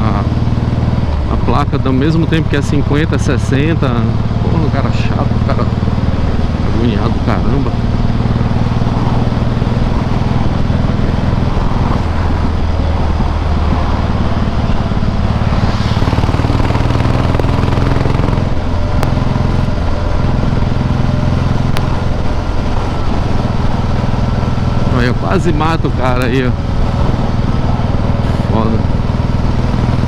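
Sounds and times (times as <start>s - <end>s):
motorcycle engine riding: 0.0s - 30.0s
traffic: 0.0s - 30.0s.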